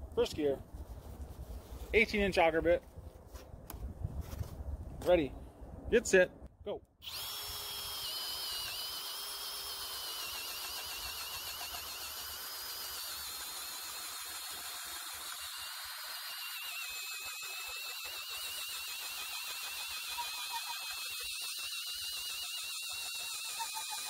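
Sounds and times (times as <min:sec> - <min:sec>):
drill motor whining: 0:07.0 - 0:24.0.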